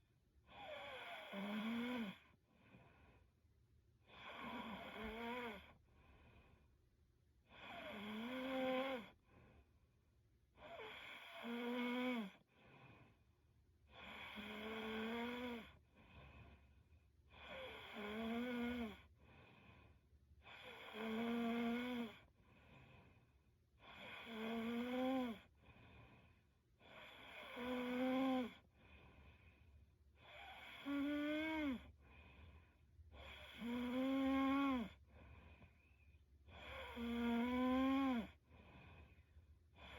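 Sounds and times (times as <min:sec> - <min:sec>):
woman snoring: 0:00.5 - 0:02.3, 0:04.1 - 0:05.8, 0:07.5 - 0:09.2, 0:10.6 - 0:12.4, 0:13.9 - 0:15.8, 0:17.3 - 0:19.1, 0:20.5 - 0:22.3, 0:23.8 - 0:25.5, 0:26.8 - 0:28.7, 0:30.2 - 0:32.0, 0:33.2 - 0:35.1, 0:36.5 - 0:38.8
faint breaths: 0:02.1 - 0:03.4, 0:04.0 - 0:08.0, 0:12.3 - 0:14.5, 0:15.6 - 0:18.0, 0:19.0 - 0:21.0, 0:22.2 - 0:24.3, 0:25.4 - 0:27.6, 0:28.5 - 0:33.7, 0:34.5 - 0:37.0, 0:37.8 - 0:39.9.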